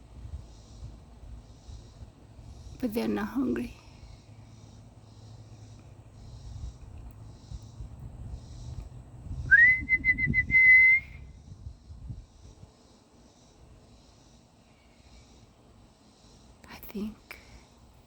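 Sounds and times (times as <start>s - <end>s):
person whistling: 9.5s - 11.3s.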